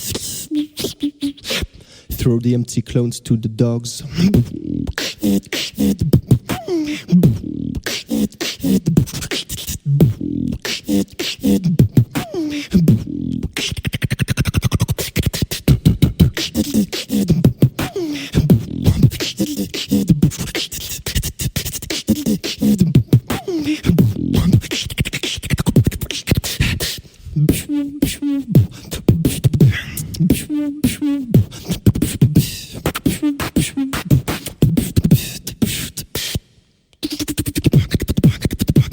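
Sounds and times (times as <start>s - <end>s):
person beatboxing: 0.0s - 38.9s.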